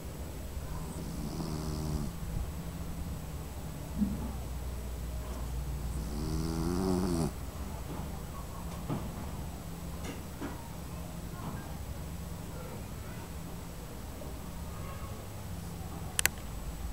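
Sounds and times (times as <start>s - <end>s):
small dog snoring: 0.8s - 2.2s, 5.7s - 7.4s
dog breathing: 0.8s - 2.3s
faint clicks: 16.2s - 16.5s.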